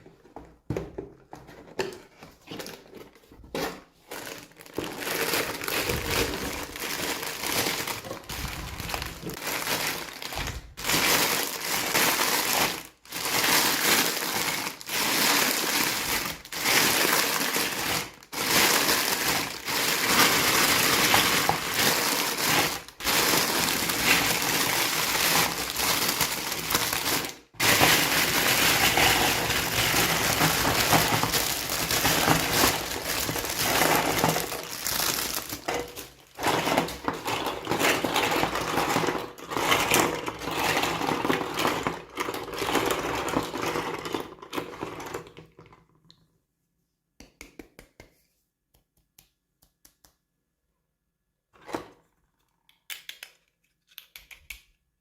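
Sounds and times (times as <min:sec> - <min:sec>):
packaging crinkling and tearing: 0:02.5 - 0:43.5.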